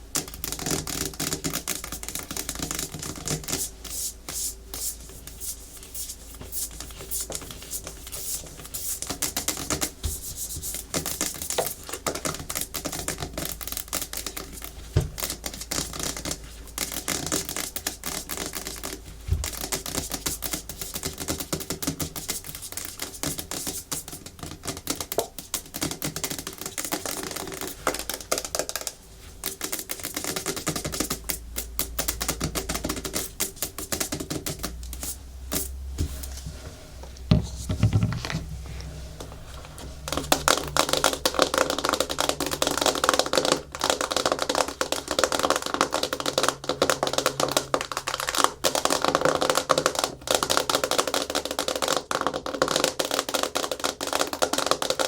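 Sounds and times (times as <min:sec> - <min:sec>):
fingernails tapping on plastic: 0:37.3 - 0:38.5
heavier knock: 0:37.3 - 0:38.5.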